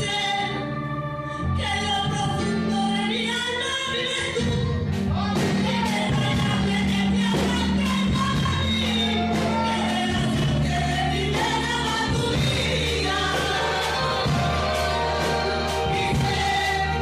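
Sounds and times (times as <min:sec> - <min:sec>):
bass notes: 0:00.0 - 0:17.0
group singing worship music: 0:00.0 - 0:17.0
drum beat: 0:11.4 - 0:17.0.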